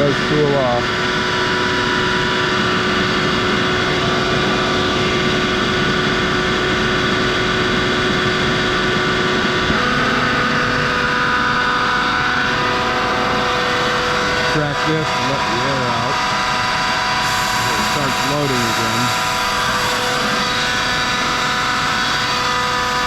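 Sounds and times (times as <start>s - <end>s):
air compressor running: 0.0s - 23.0s
machine whining tones: 0.0s - 23.0s.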